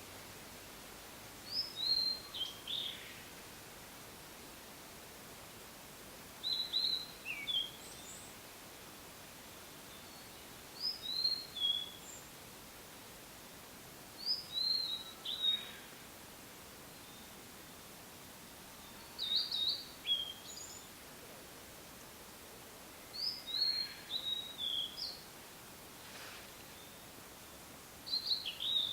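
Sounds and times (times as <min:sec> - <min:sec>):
faint background hiss: 0:00.0 - 0:28.9
bird whistled song: 0:01.5 - 0:03.0, 0:06.4 - 0:08.2, 0:09.9 - 0:12.2, 0:14.2 - 0:15.8, 0:18.8 - 0:20.8, 0:23.2 - 0:25.2, 0:28.1 - 0:28.9.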